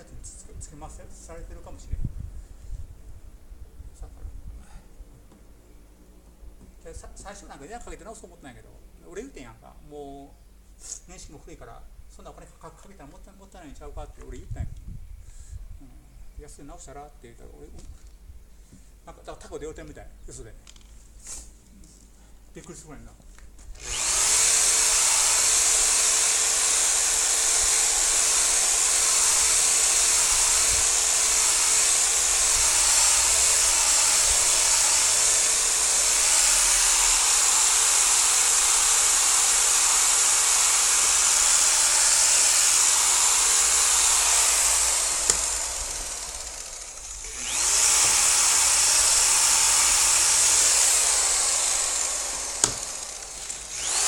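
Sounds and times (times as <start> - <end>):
electric polisher running: 23.8 - 54.0.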